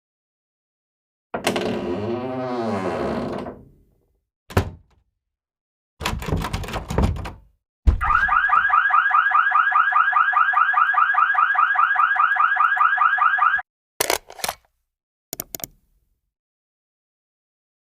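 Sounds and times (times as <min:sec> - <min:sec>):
thunk: 0:07.9 - 0:08.2
alarm ringing in rapid pulses: 0:08.0 - 0:13.6.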